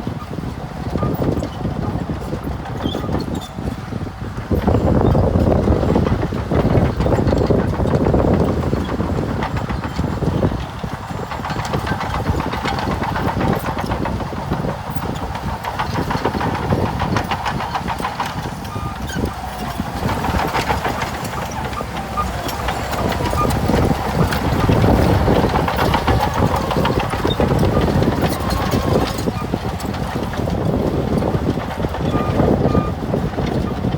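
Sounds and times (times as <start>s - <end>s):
diesel engine running: 0.0s - 33.9s.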